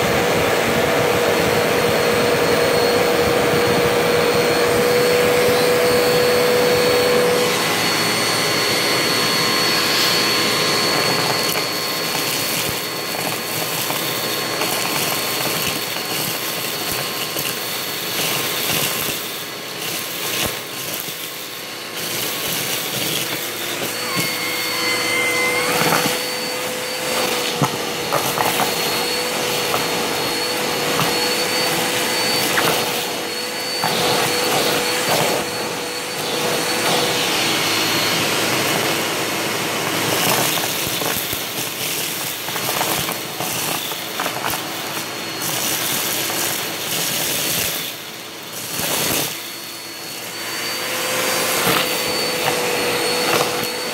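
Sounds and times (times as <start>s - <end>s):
vacuum cleaner motor whine: 0.0s - 53.9s.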